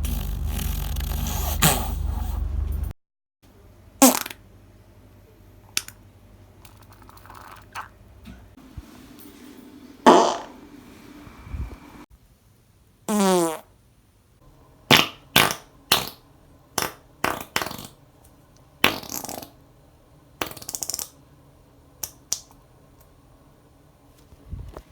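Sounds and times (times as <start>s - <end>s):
person farting: 0.0s - 2.3s, 4.0s - 4.4s, 10.1s - 10.5s, 13.1s - 13.7s, 14.9s - 16.2s, 16.8s - 18.0s, 18.8s - 19.6s.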